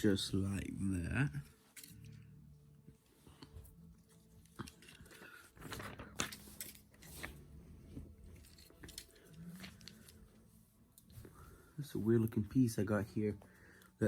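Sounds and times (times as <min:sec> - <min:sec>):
plastic pieces clicking and rattling: 0:08.4 - 0:10.2.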